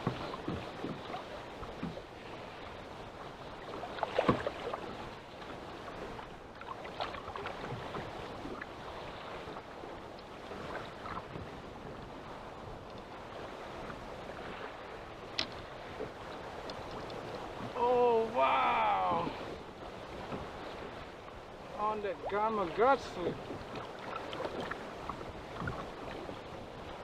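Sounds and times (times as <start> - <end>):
sea slapping against boat hull: 0.0 - 2.0, 3.8 - 6.1, 15.3 - 17.8, 23.4 - 26.3
wind on microphone: 0.0 - 27.0.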